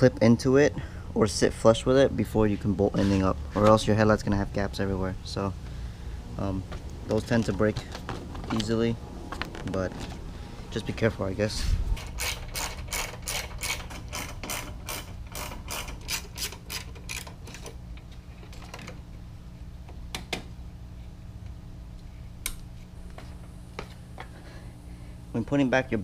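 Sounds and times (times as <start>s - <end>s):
ratchet wrench clicking: 12.0s - 17.7s.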